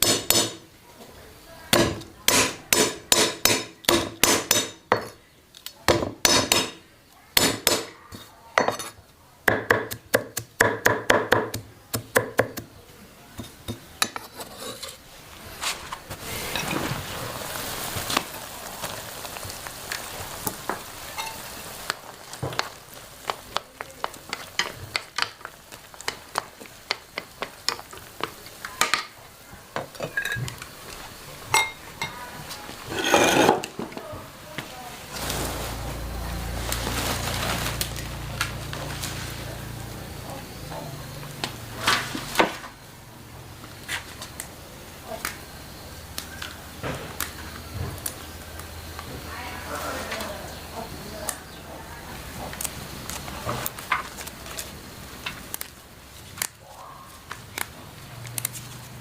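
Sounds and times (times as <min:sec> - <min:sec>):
steady hiss: 0:15.0 - 0:59.0.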